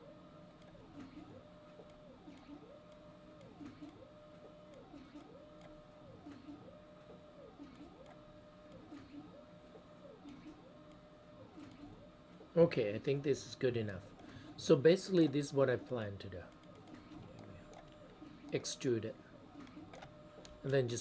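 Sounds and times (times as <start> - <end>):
faint pulsing hum: 0.0 - 21.0
soft clicks: 0.6 - 1.2, 1.8 - 4.0, 4.7 - 6.5, 10.2 - 11.0, 15.8 - 18.6, 19.6 - 20.9.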